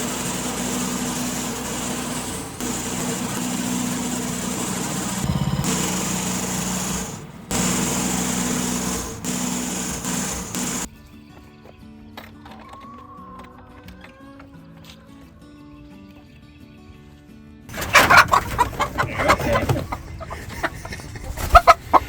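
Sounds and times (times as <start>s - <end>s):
saw blade cutting wood: 0.0s - 10.9s
small gasoline engine running: 0.0s - 10.9s.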